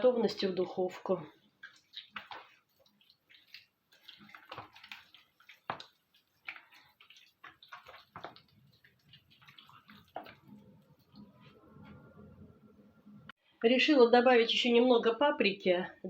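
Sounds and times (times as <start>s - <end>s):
wet squelching of hands on meat: 1.3s - 12.1s.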